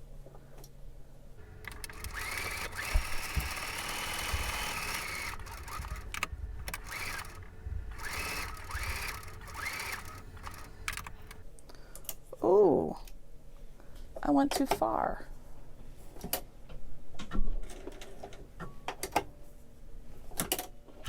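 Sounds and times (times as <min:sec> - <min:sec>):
sewing machine stitching: 0:01.4 - 0:11.4.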